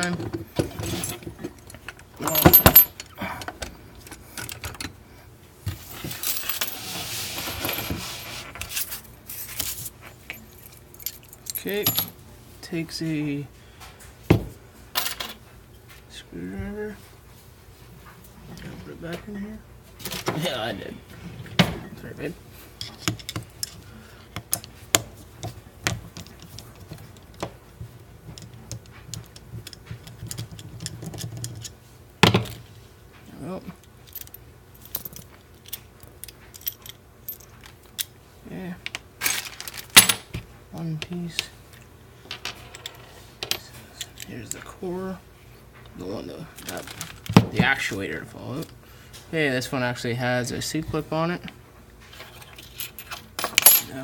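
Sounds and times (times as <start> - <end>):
rustling and scraping: 0.0 - 2.6, 5.6 - 11.3, 39.2 - 40.0, 52.0 - 53.8.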